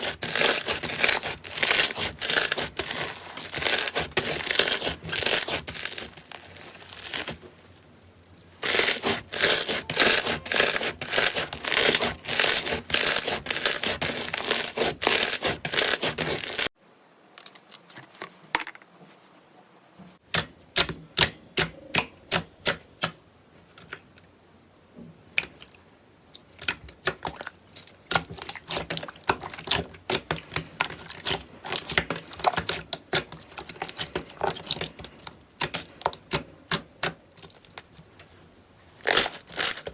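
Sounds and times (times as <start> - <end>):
slime crackling and popping: 8.6 - 16.7, 39.0 - 39.9.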